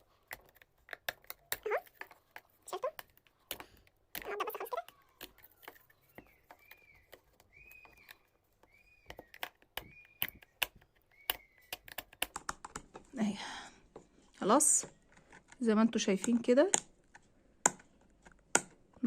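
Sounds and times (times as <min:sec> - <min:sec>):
hand tool clicking and tapping: 0:00.0 - 0:13.0
bird chirping: 0:04.2 - 0:12.7.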